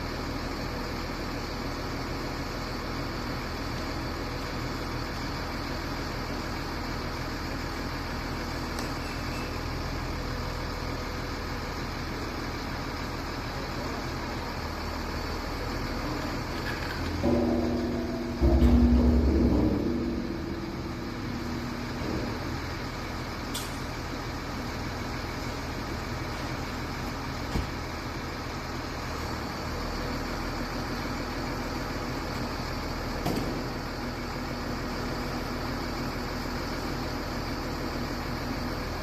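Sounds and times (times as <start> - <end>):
machine humming: 15.2 - 26.2.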